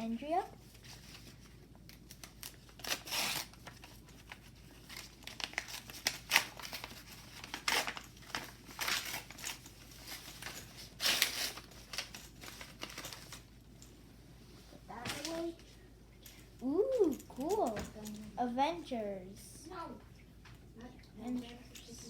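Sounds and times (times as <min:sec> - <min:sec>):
paper envelope tearing: 0:02.1 - 0:09.6, 0:10.2 - 0:13.4.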